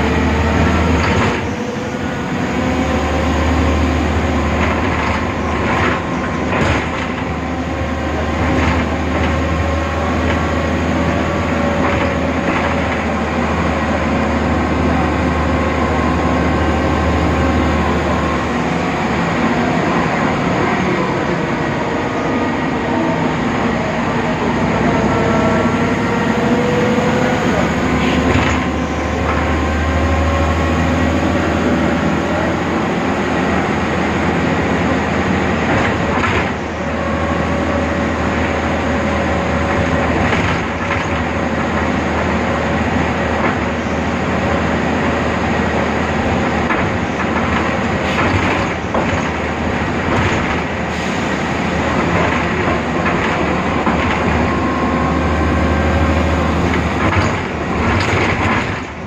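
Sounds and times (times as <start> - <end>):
bus diesel engine drone: 0.0 - 59.0
knocks and rattles: 4.5 - 7.4, 8.3 - 9.5, 11.8 - 13.2, 28.1 - 29.5, 35.6 - 36.7, 39.7 - 42.4, 46.6 - 50.8, 51.9 - 54.6, 56.6 - 59.0.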